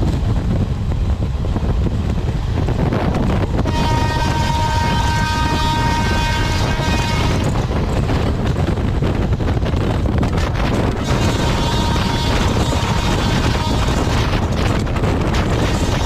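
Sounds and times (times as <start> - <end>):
train rumbling: 0.0 - 16.0
train horn blast: 3.6 - 7.7, 10.9 - 14.4.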